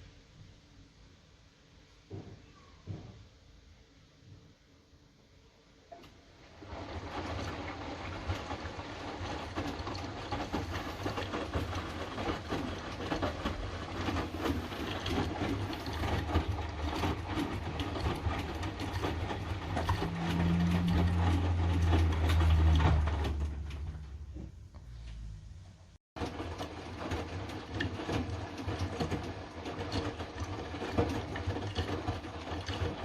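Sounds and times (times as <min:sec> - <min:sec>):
washing machine motor hum: 0:05.7 - 0:33.0
clothes and water tumbling: 0:05.9 - 0:25.2, 0:26.2 - 0:33.0.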